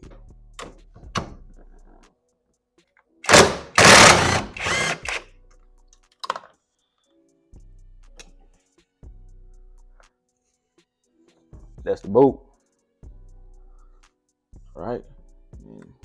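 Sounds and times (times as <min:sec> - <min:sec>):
rapid mechanical rattling: 0:03.3 - 0:05.2
wrench clicks: 0:03.3 - 0:05.2.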